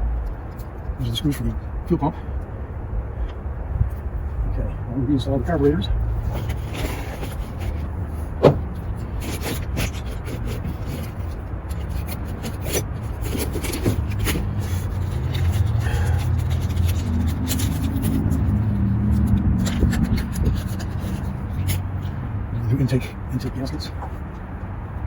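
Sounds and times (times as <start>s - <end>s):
steady low rumble: 0.0s - 24.3s
parts and tools clicking and knocking: 8.4s - 22.1s.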